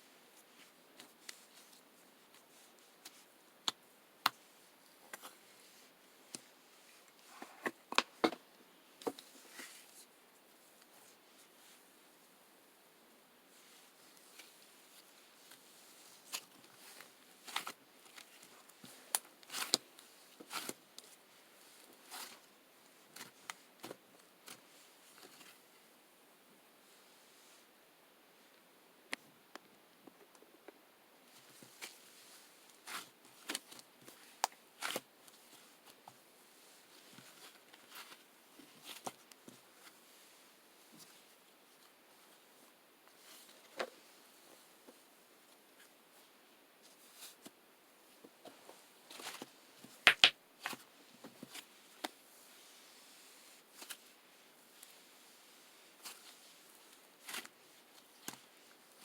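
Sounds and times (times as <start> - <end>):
rustles and taps of handling: 6.3 - 10.1, 29.1 - 40.0, 40.9 - 54.2, 55.8 - 59.0.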